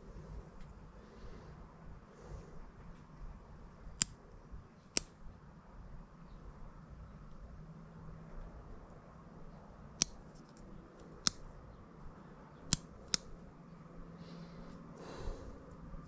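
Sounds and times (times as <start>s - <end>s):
sharp clicks of hand tools: 5.0s - 5.2s, 10.0s - 11.4s, 12.7s - 13.4s.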